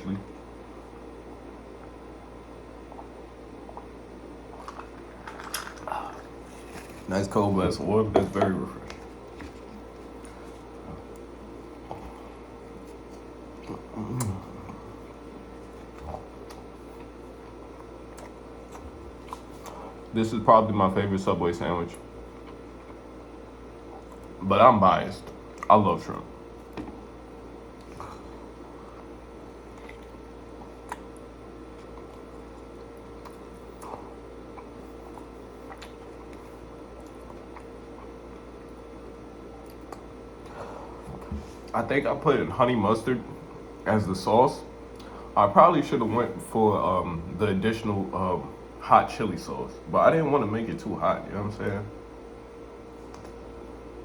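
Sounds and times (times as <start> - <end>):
faint steady hum: 0.0 - 54.0
man eating close up: 0.0 - 54.0
person chewing a sandwich: 1.0 - 7.1, 8.9 - 20.1, 21.9 - 24.4, 26.4 - 41.8
man humming mmm: 13.6 - 15.0
mouth clicks and smacks: 29.0 - 38.7.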